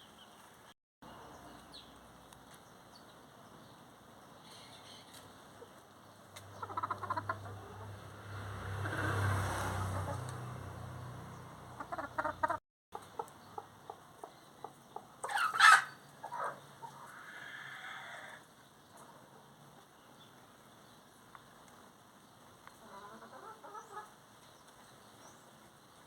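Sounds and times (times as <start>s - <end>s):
chickens clucking: 6.4s - 8.1s, 8.8s - 10.4s, 11.7s - 17.3s, 22.7s - 24.2s
chicken squawking: 6.6s - 7.9s, 11.8s - 12.6s, 15.2s - 18.4s.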